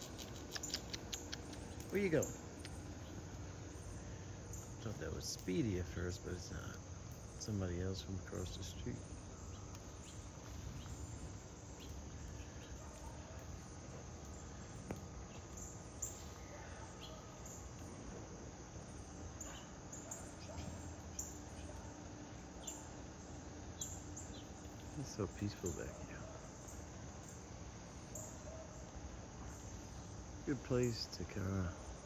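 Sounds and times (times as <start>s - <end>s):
faint sharp clicks: 0.0s - 3.8s
insects droning: 0.0s - 32.0s.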